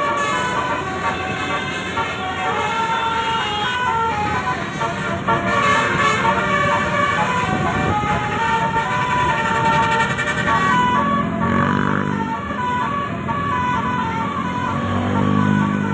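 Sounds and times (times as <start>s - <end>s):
musical horns playing a tune: 0.0s - 14.6s
lower-pitched horn tone: 4.7s - 12.1s.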